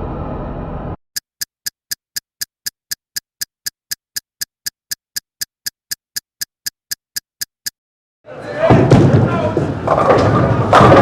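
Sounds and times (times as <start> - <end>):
sharp ticking clicks: 1.1 - 7.8.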